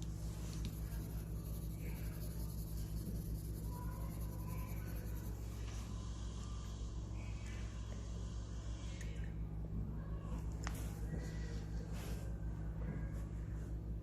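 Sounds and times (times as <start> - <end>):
steady low hum: 0.0 - 14.0
pen scratching on paper: 0.5 - 5.5.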